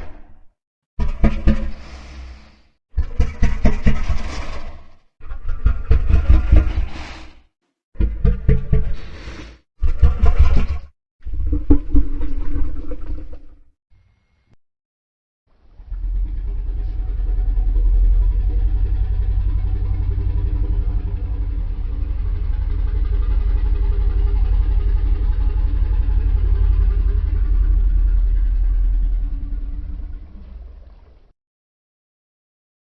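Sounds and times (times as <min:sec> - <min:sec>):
deep creature rumble: 0:15.6 - 0:31.3.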